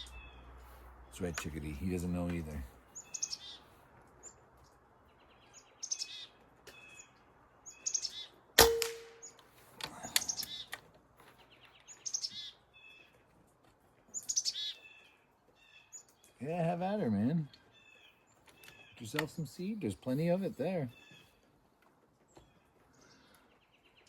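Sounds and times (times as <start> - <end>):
chickadees calling: 0.0 - 8.4, 9.2 - 10.8, 11.5 - 13.2, 14.1 - 21.4
air rifle shot: 8.6 - 9.2.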